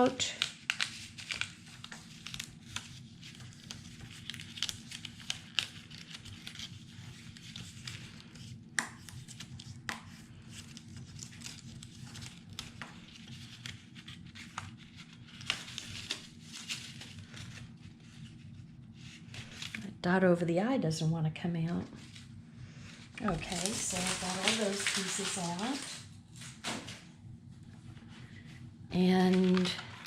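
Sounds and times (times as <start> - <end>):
paper rustling: 0.0 - 19.8, 22.0 - 27.0, 29.2 - 30.0.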